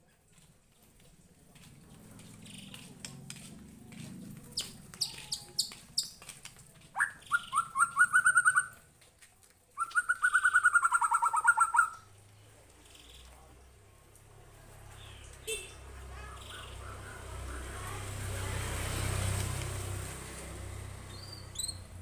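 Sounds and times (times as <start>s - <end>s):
songbird whistling and trilling: 7.0s - 8.8s, 9.8s - 12.1s, 21.1s - 21.9s.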